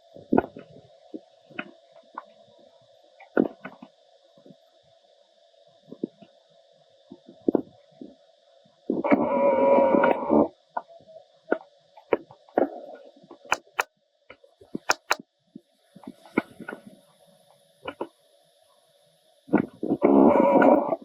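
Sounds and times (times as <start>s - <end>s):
light clicks and taps: 13.5s - 13.8s, 14.9s - 15.2s.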